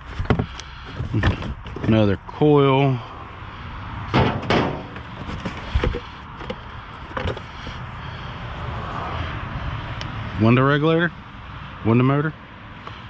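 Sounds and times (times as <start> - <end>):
car parts knocking and clunking: 0.0 - 2.4, 4.0 - 7.9
outdoor background noise: 0.0 - 13.0.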